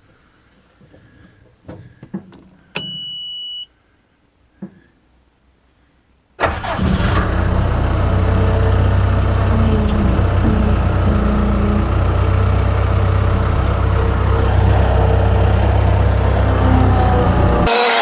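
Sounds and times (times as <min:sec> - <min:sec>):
engine running with deep hum: 0:07.0 - 0:18.0.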